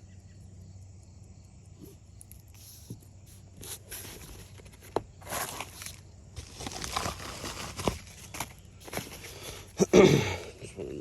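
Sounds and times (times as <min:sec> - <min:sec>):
crickets chirping: 0:00.0 - 0:11.0
packaging rustling and crinkling: 0:03.6 - 0:09.7.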